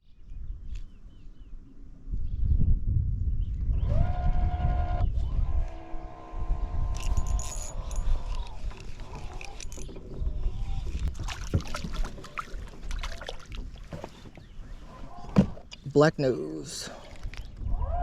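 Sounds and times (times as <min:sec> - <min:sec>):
boat motor whining: 0:03.8 - 0:11.2, 0:13.8 - 0:15.9.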